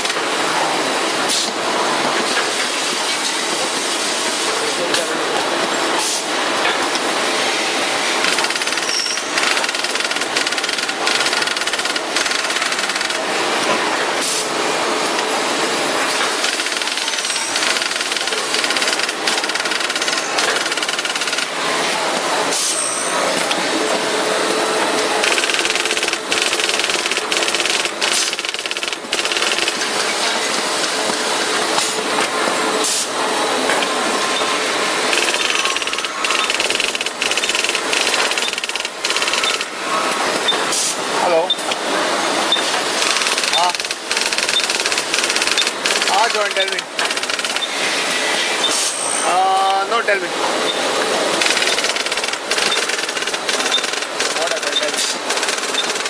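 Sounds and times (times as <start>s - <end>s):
small machine clicks: 8.2s - 13.2s, 16.1s - 21.6s, 25.2s - 29.9s, 35.1s - 39.7s, 42.5s - 47.8s, 51.4s - 56.0s.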